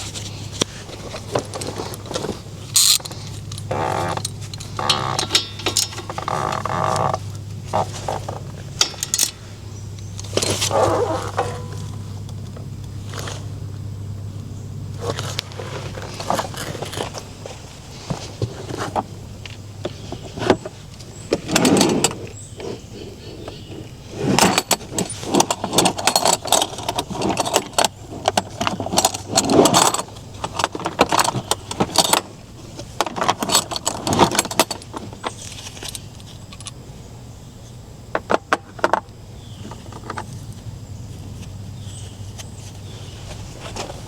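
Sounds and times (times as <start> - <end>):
metal tools clinking and rattling: 0.0 - 12.1, 23.5 - 36.8.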